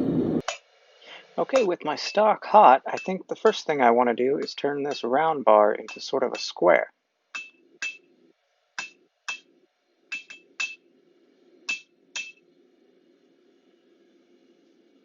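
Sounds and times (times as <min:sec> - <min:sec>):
hammer striking steel on anvil: 0:02.9 - 0:05.2, 0:05.8 - 0:06.6, 0:07.4 - 0:08.1, 0:08.8 - 0:09.5, 0:10.1 - 0:10.9, 0:11.7 - 0:12.4.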